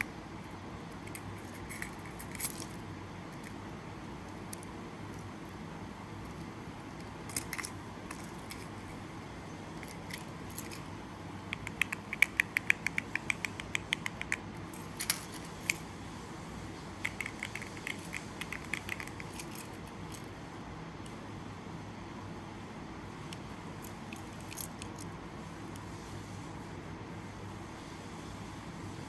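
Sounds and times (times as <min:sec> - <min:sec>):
mechanical keyboard typing: 0:11.4 - 0:15.8, 0:17.0 - 0:19.7.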